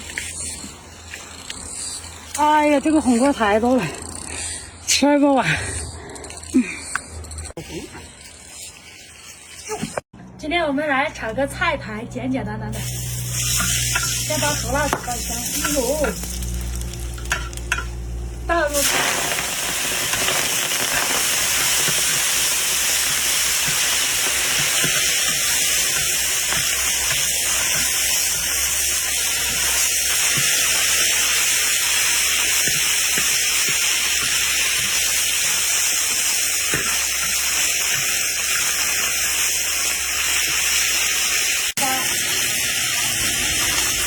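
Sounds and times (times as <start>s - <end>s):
vegetables sizzling in a wok: 12.7s - 44.0s
spatula knocking wok: 13.5s - 16.4s, 21.6s - 39.1s.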